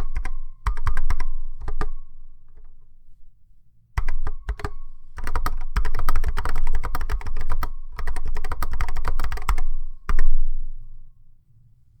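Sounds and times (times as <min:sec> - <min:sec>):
keyboard typing: 0:00.0 - 0:02.8, 0:04.0 - 0:10.3.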